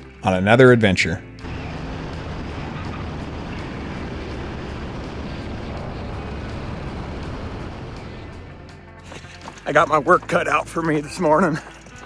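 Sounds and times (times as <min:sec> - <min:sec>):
light aircraft engine droning: 0:01.2 - 0:09.6.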